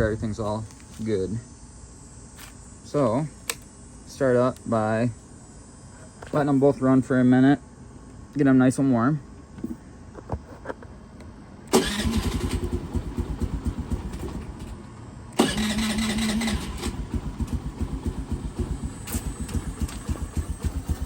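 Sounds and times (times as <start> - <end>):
electric starter whirring: 11.7 - 21.0
scooter engines idling: 11.7 - 21.0.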